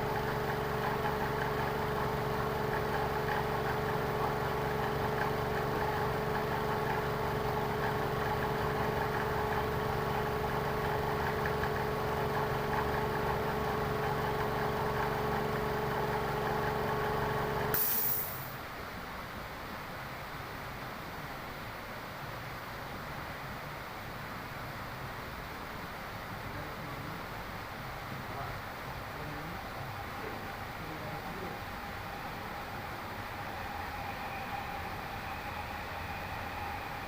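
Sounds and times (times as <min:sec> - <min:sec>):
motor humming: 0:00.0 - 0:17.8
hissing air burst: 0:17.7 - 0:18.6.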